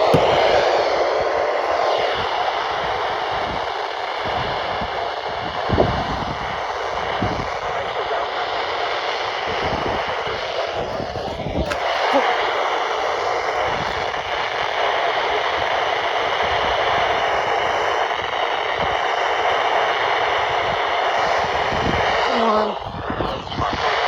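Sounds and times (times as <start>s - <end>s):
radio static hiss: 0.0s - 24.0s.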